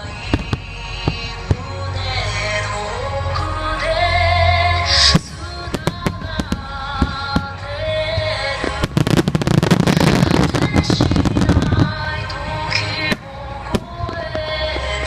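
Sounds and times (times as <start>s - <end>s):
fireworks bangs: 0.0s - 1.9s, 5.1s - 14.9s
fireworks crackling: 0.0s - 2.3s, 4.9s - 15.0s
music with sustained tones: 0.0s - 15.0s.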